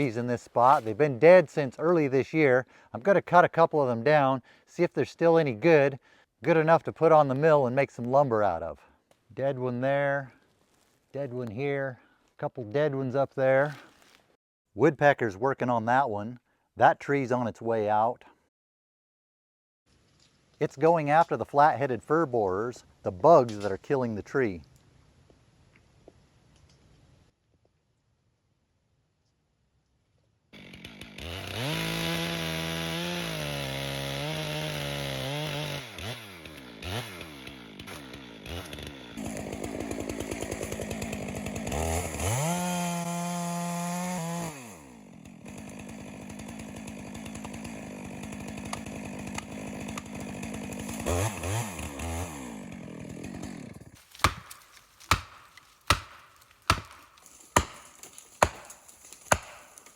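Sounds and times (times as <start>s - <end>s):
chainsaw cutting wood: 0.0s - 2.0s, 30.6s - 59.9s.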